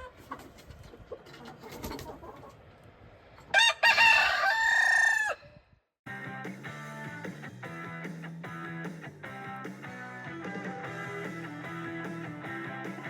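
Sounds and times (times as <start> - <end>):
faint coop sounds: 0.0 - 5.6
rooster crowing: 3.5 - 5.5.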